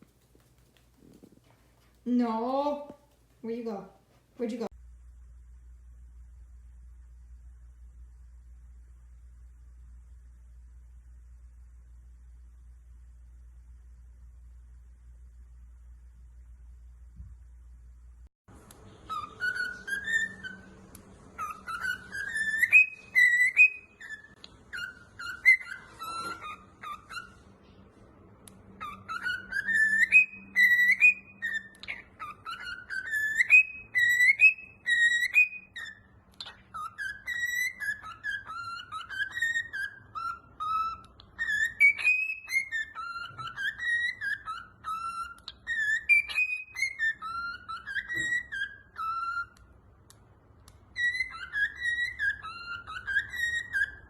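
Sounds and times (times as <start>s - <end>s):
pet bird whistling: 18.9s - 27.4s, 28.7s - 49.7s, 50.9s - 54.0s.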